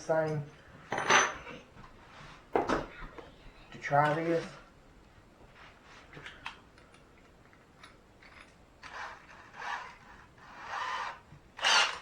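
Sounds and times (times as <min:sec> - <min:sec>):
drill chuck scraping turns: 0:08.2 - 0:12.0.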